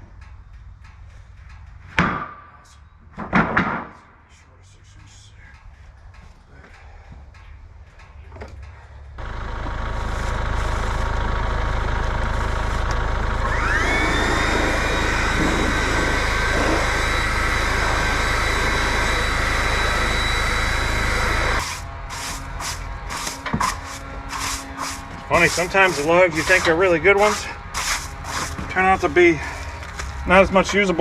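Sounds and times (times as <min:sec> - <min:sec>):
band sawmill motor running: 0:09.2 - 0:31.0
sawmill whine: 0:09.2 - 0:31.0.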